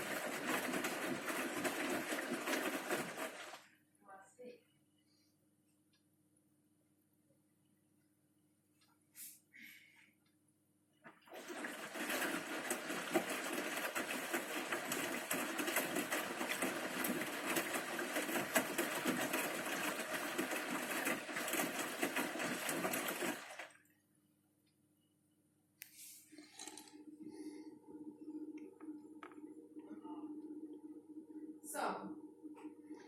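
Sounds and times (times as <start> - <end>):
washing machine running: 0.0 - 4.0, 11.1 - 24.3, 26.4 - 33.0.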